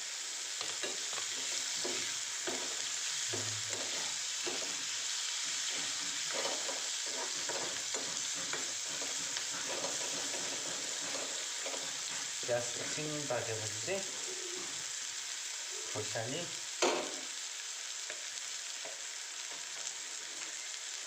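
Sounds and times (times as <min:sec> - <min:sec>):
onions sizzling in hot oil: 0:00.0 - 0:21.0
stirring scrapes against pan: 0:00.7 - 0:13.2.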